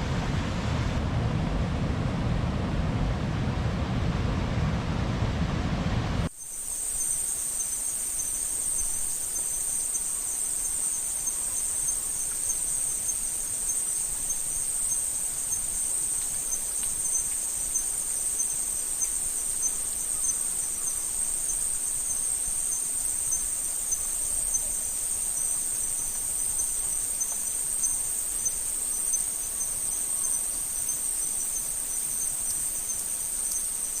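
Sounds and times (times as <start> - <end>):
loud rushing noise: 0.0 - 6.3
high-pitched insect chorus: 6.3 - 34.0.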